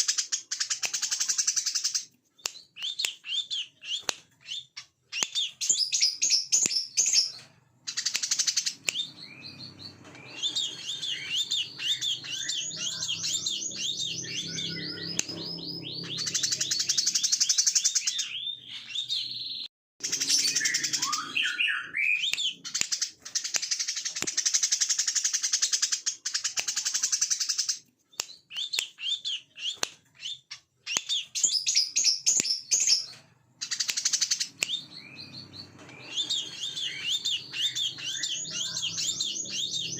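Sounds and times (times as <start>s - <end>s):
sunbird singing shrill song: 2.6s - 25.9s, 28.4s - 39.9s.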